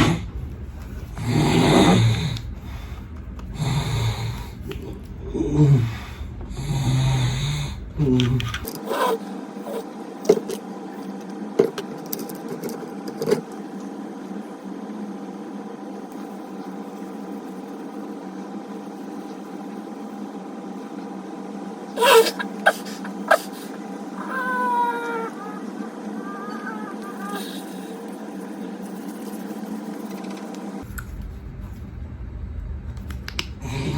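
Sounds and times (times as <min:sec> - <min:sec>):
steady hum: 0:00.0 - 0:33.9
man snoring loudly: 0:01.2 - 0:02.4, 0:03.6 - 0:04.6, 0:05.3 - 0:08.2.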